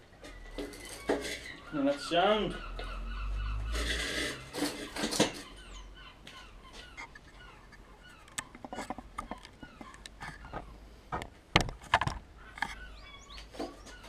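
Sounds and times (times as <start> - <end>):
birds chirping: 0.0 - 14.0
lawnmower parts clicking and knocking: 0.2 - 1.6, 3.8 - 5.5, 7.0 - 12.8.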